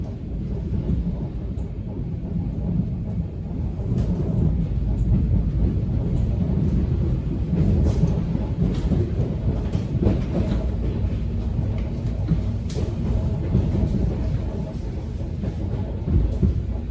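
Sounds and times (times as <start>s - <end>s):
subway train rumble: 0.0s - 16.9s.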